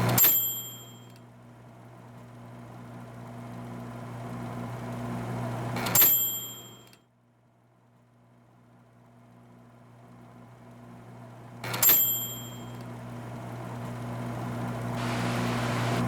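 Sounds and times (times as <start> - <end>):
typewriter bell ding: 0.1 - 1.2, 5.9 - 7.0, 11.7 - 12.8
low steady hum: 15.0 - 16.0.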